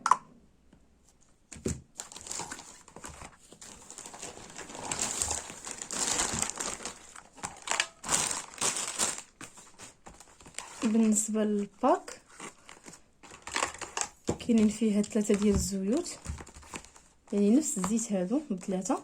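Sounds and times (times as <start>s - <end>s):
packaging crinkling and rustling: 1.5s - 11.3s, 12.1s - 19.0s
packaging tearing: 2.0s - 10.9s, 12.3s - 14.2s.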